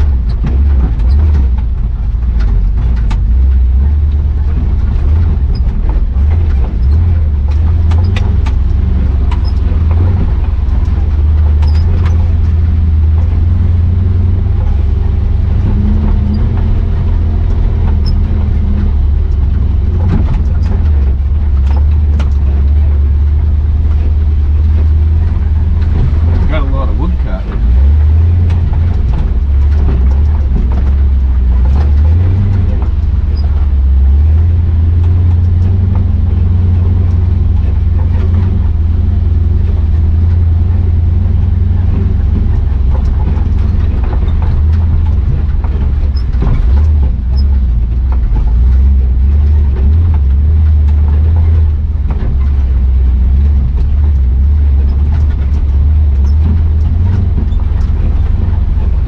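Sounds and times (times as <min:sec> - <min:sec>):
knocks and rattles: 0:00.0 - 0:59.0
truck engine rumbling: 0:00.0 - 0:59.0.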